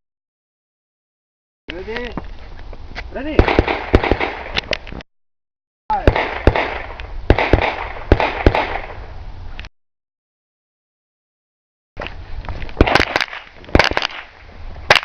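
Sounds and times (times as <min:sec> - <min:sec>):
rifle shots: 0:03.3 - 0:04.6, 0:05.9 - 0:09.0, 0:12.8 - 0:15.0.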